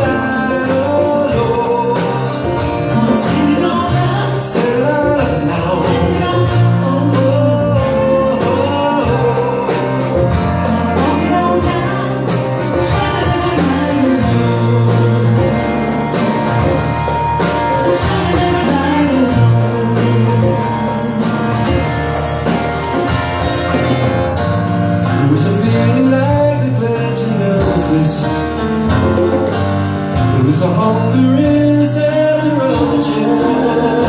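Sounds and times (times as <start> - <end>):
person singing: 0.0 - 22.1, 30.2 - 34.0
drum beat: 0.0 - 34.0
live band music: 0.0 - 34.0.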